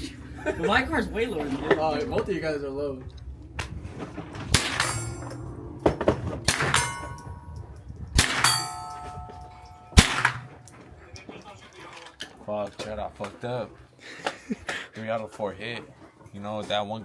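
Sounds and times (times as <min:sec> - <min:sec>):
steel targets clanging: 0:03.4 - 0:13.0
sharp shots: 0:04.5 - 0:05.3, 0:06.4 - 0:07.2, 0:08.2 - 0:09.0, 0:09.9 - 0:10.7.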